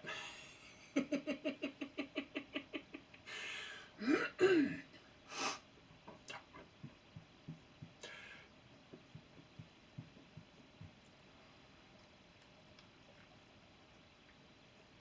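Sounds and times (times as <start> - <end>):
man breathing: 3.3 - 4.1, 8.0 - 8.6.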